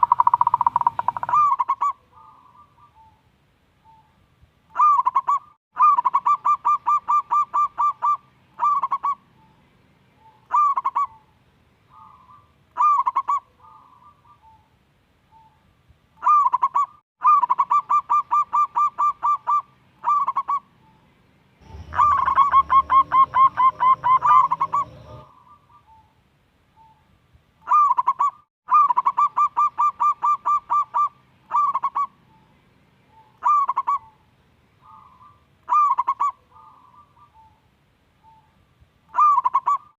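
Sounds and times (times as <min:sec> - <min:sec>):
dove cooing: 0:00.0 - 0:03.2, 0:04.8 - 0:09.5, 0:10.2 - 0:11.3, 0:11.9 - 0:14.7, 0:16.2 - 0:20.7, 0:21.6 - 0:26.1, 0:27.7 - 0:32.5, 0:33.1 - 0:34.2, 0:34.8 - 0:37.6, 0:39.1 - 0:40.0
low rumble: 0:21.6 - 0:25.3.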